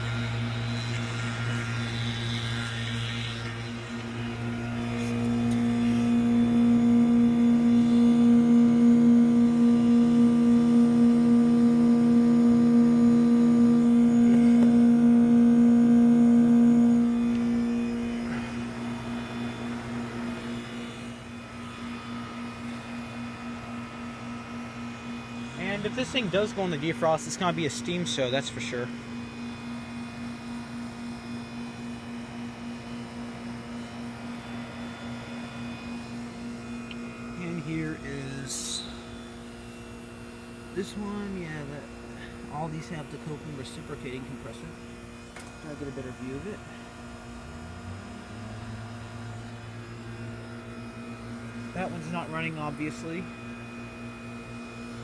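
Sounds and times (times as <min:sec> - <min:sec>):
heat pump humming: 0:00.0 - 0:55.0
faint regular pulsing: 0:00.1 - 0:31.2.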